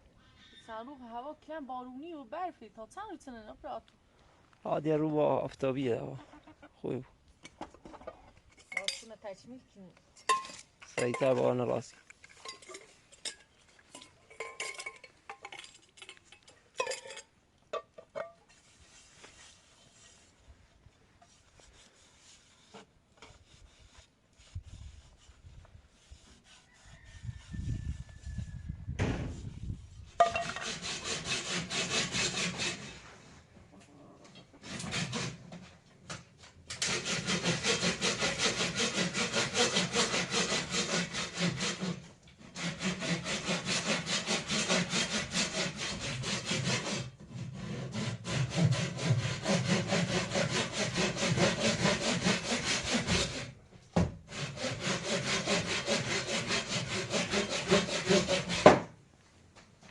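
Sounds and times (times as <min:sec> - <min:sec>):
hand saw cutting wood: 0:21.3 - 0:28.1, 0:29.2 - 0:33.1, 0:34.4 - 0:59.0.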